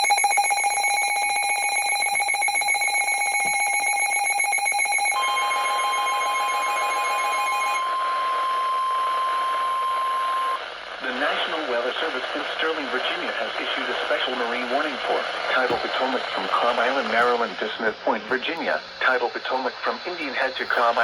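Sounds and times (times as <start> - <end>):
harsh pulsing alarm tone: 0.0 - 10.6, 14.6 - 18.6
steady single-pitch warning tone: 0.0 - 10.6.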